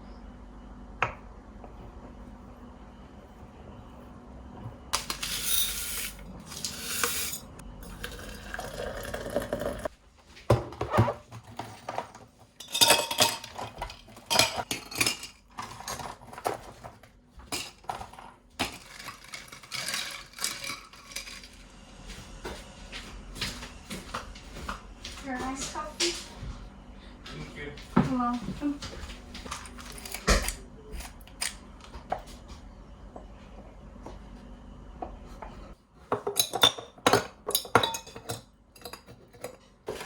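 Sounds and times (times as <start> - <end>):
dishes and cutlery clinking: 12.6 - 16.8, 36.2 - 40.0.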